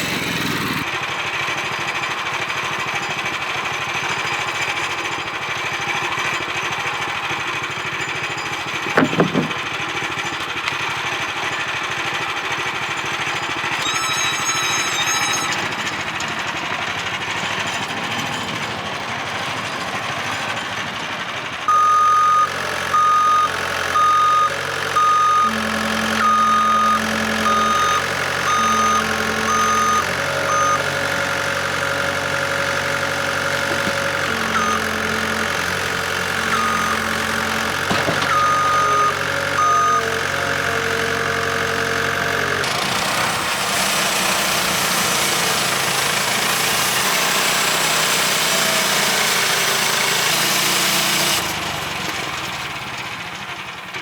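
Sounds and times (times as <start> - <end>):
small gasoline engine running: 0.0 - 54.0
short knock: 8.8 - 9.6
loud beeps: 13.8 - 15.8, 21.7 - 30.9, 33.7 - 35.6, 36.3 - 40.2.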